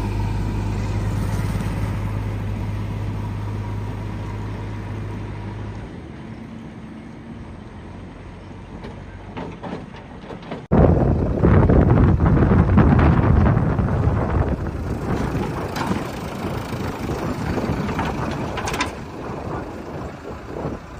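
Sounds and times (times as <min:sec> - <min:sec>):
diesel engine running: 0:00.0 - 0:20.9
faint rumble: 0:10.6 - 0:20.9.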